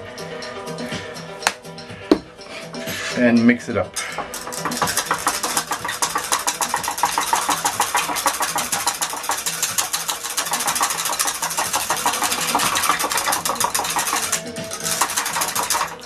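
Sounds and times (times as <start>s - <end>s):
utensil clicking against bowl: 4.0s - 16.0s.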